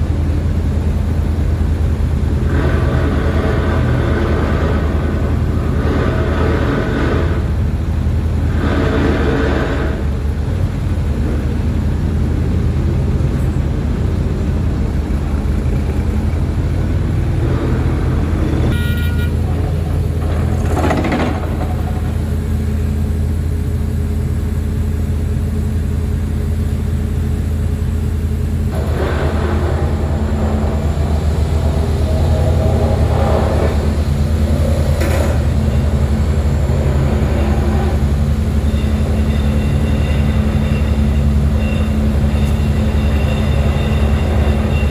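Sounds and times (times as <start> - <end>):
heavy diesel machinery droning: 0.0 - 44.9
horn toot: 17.4 - 20.7.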